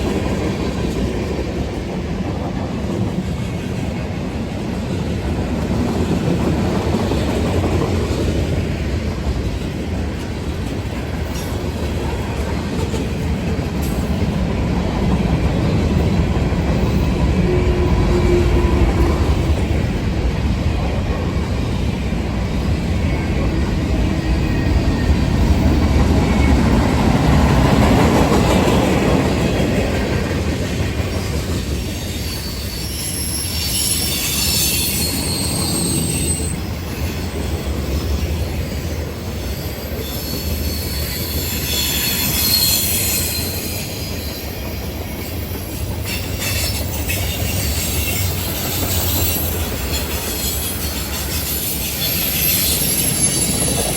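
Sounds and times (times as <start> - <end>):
freight train rumble and clatter: 0.0 - 53.9
high-pitched wheel squeal: 31.9 - 37.6, 39.4 - 53.9.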